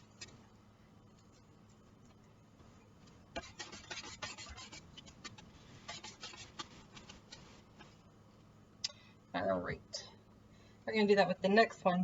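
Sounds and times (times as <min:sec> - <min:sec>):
onion scraping on mandoline blade: 0:03.4 - 0:07.5.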